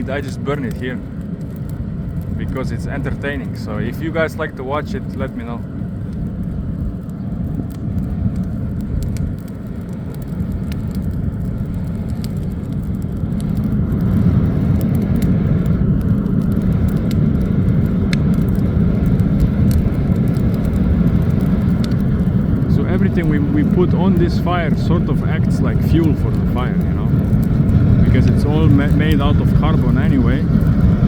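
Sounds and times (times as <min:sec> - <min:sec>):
fire crackling: 0:00.0 - 0:31.0
furnace fire roaring: 0:00.0 - 0:31.0.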